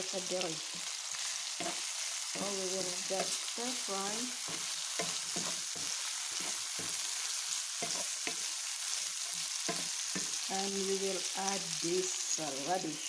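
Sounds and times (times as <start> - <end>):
food sizzling in hot oil: 0.0 - 13.0
scraping and stirring in a pan: 0.5 - 10.5.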